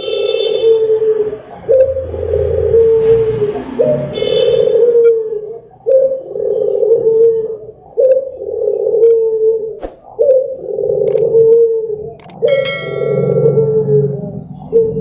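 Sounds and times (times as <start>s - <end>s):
dove cooing: 0.0s - 15.0s
sharp click: 11.1s - 11.3s, 12.2s - 12.5s.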